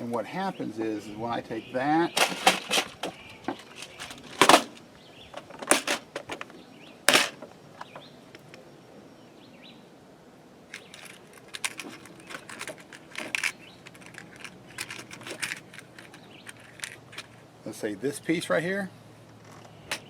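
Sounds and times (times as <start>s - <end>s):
birds chirping faintly: 0.0s - 20.0s
small parts clicking and rattling: 2.2s - 6.5s, 7.1s - 7.5s, 10.7s - 17.4s, 19.3s - 20.0s.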